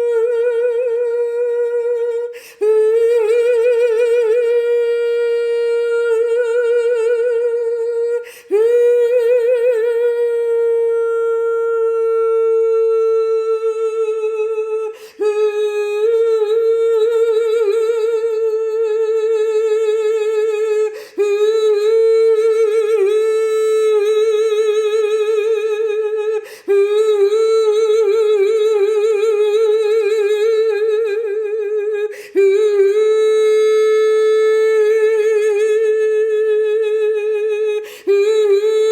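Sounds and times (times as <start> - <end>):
woman breathing in: 2.3 - 2.6, 8.2 - 8.5, 14.9 - 15.2, 20.9 - 21.2, 26.4 - 26.7, 32.1 - 32.4, 37.8 - 38.1.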